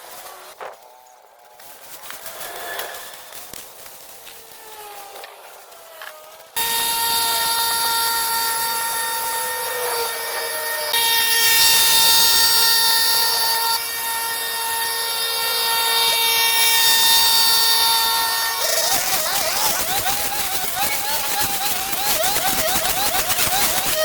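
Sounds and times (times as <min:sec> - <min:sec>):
power tool motor running: 0:05.9 - 0:24.0
hiss: 0:14.3 - 0:24.0.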